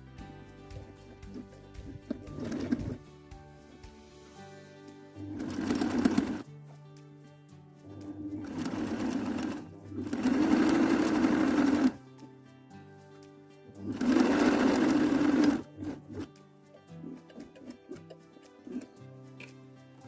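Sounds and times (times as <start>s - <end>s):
sewing machine stitching: 1.1s - 3.0s, 5.2s - 6.4s, 8.3s - 12.0s, 13.8s - 16.3s.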